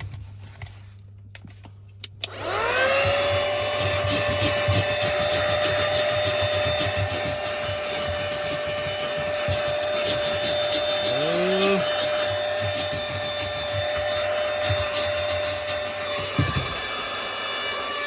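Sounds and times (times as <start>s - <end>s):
handheld vacuum motor whining: 2.2s - 18.0s.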